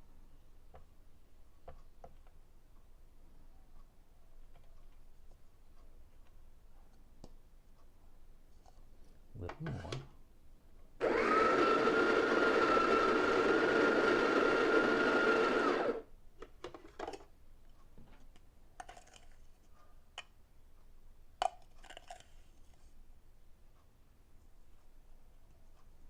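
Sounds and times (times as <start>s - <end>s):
coffee grinder motor whine: 11.0s - 16.0s.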